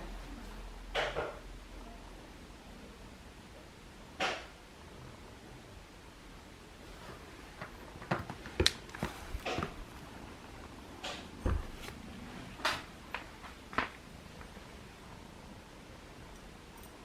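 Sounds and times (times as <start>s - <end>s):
dull thump: 11.4s - 12.0s.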